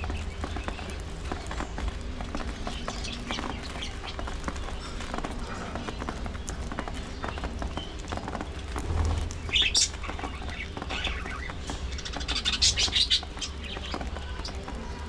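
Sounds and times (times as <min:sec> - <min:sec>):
steady low hum: 0:03.1 - 0:12.9
budgerigars chirping: 0:08.9 - 0:14.6.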